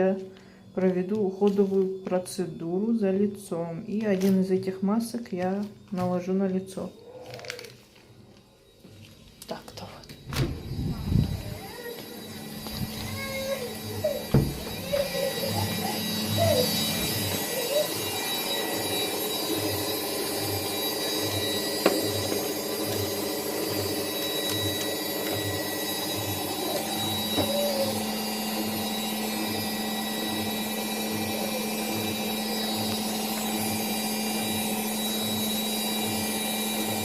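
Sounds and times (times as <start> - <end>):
low hum: 9.9 - 11.7
hair dryer running: 10.2 - 37.0.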